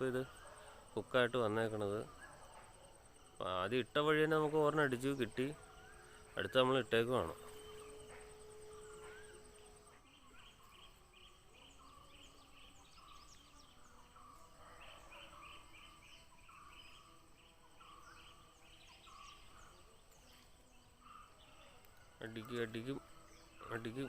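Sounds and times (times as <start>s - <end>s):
high insect whine: 2.6s - 14.4s.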